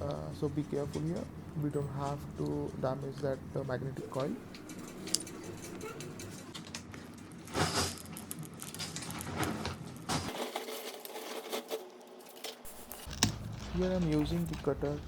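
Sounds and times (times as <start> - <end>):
glass chipping clicks and crackles: 4.5 - 9.3, 10.8 - 15.0.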